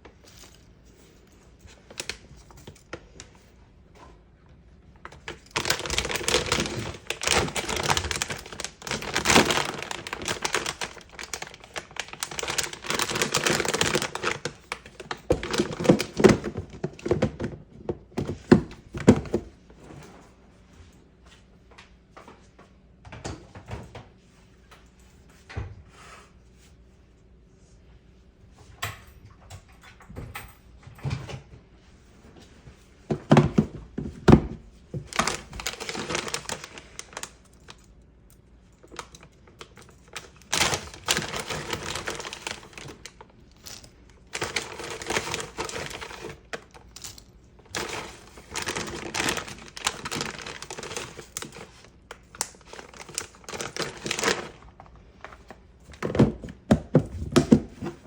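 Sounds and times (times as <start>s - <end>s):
crinkling rustling handling: 0.0s - 3.6s, 4.9s - 20.2s, 31.9s - 58.0s.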